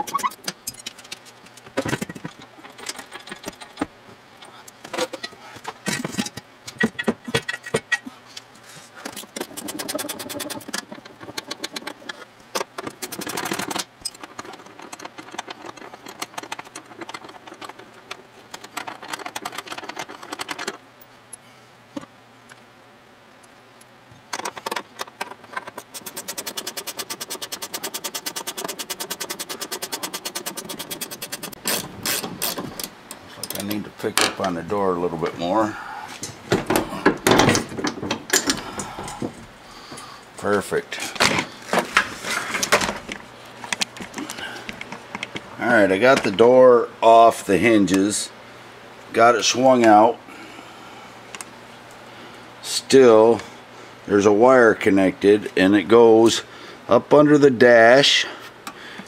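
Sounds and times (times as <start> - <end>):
hand ratchet clicking: 25.8 - 33.7
metal tools clinking: 31.4 - 34.5, 37.3 - 39.0.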